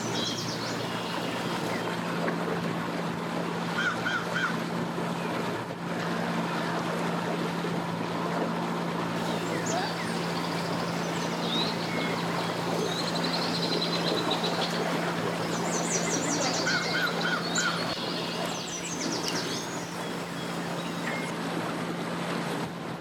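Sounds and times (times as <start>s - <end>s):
small birds chirping and trilling: 0.0s - 1.9s, 9.2s - 21.3s
steady low hum: 0.0s - 1.9s, 9.2s - 21.3s
water rushing: 0.0s - 3.8s, 5.4s - 23.0s.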